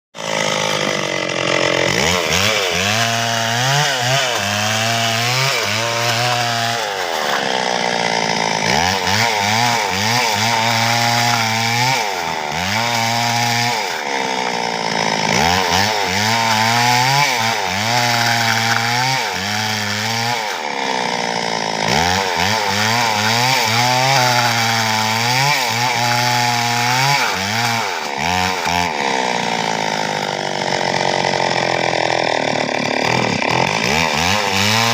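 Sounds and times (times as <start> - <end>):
chainsaw cutting wood: 0.2 - 34.9.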